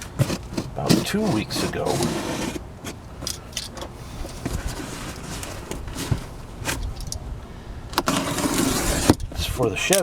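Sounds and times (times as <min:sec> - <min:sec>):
cardboard box rustling and knocks: 0:00.0 - 0:01.7.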